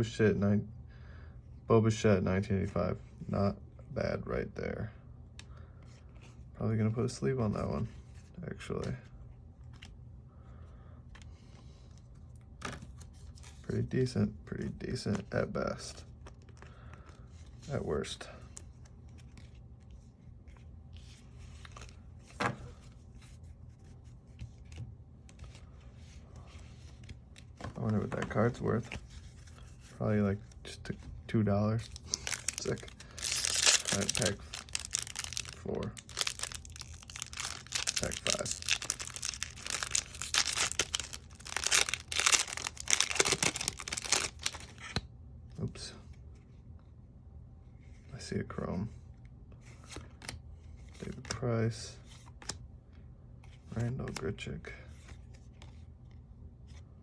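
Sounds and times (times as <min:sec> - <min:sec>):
low steady hum: 0:00.0 - 0:57.0
cards being leafed through: 0:31.8 - 0:45.0
wrapper tearing and crinkling: 0:32.0 - 0:44.8.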